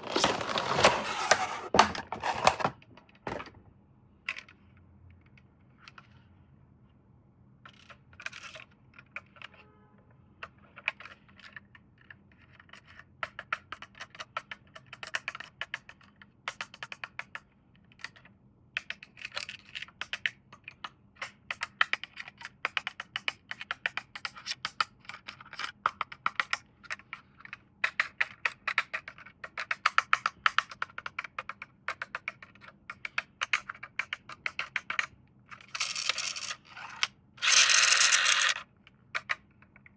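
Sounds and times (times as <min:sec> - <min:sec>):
plastic toy parts clicking: 0:10.8 - 0:39.9.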